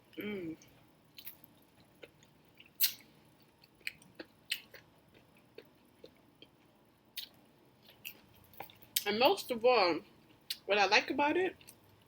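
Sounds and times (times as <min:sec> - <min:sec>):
person chewing food: 0:00.0 - 0:09.0.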